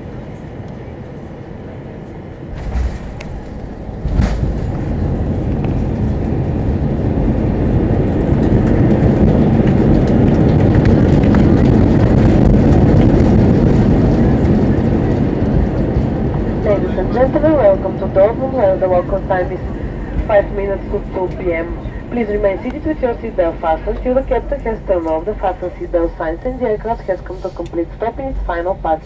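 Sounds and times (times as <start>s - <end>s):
jet engines reverse thrust: 0.0s - 29.0s
tyres rumbling on runway: 0.0s - 29.0s
landing gear thump: 2.5s - 4.8s
wheels jolting on runway: 2.5s - 5.3s.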